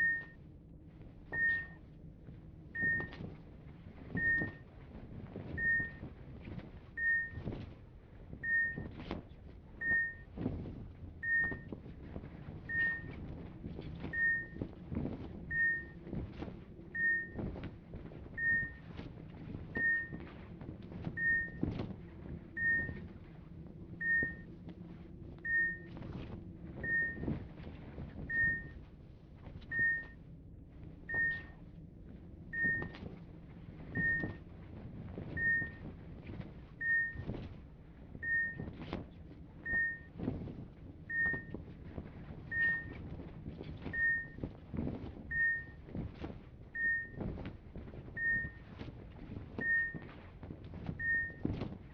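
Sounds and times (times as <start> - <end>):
patient monitor beeping: 0.0 - 0.4, 1.4 - 1.8, 2.8 - 3.2, 4.2 - 4.6, 5.6 - 6.0, 7.0 - 7.4, 8.4 - 8.9, 9.8 - 10.3, 11.2 - 11.7, 12.7 - 13.2, 14.1 - 14.6, 15.5 - 16.0, 16.9 - 17.4, 18.4 - 18.9, 19.8 - 20.2, 21.2 - 21.7, 22.5 - 23.1, 24.0 - 24.5, 25.4 - 26.2, 26.8 - 27.5, 28.3 - 28.8, 29.7 - 30.2, 31.1 - 31.6, 32.5 - 33.0, 33.9 - 34.4, 35.4 - 35.8, 36.8 - 37.2, 38.2 - 38.7, 39.6 - 40.2, 41.1 - 41.5, 42.5 - 43.0, 43.9 - 44.4, 45.3 - 45.8, 46.8 - 47.2, 48.2 - 48.7, 49.6 - 50.1, 51.0 - 51.4
steady low hum: 0.0 - 51.9.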